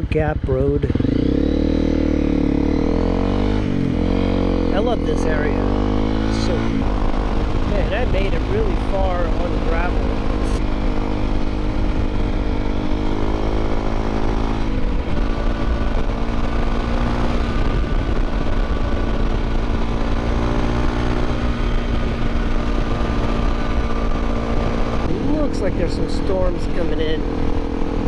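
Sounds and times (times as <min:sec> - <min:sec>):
motorcycle engine running: 0:00.0 - 0:28.0
wind noise on microphone: 0:05.8 - 0:28.0.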